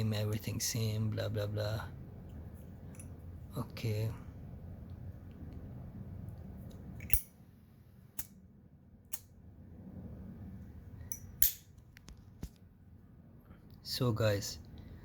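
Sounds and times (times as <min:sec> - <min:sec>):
metal lighter clicks: 0:07.0 - 0:07.3.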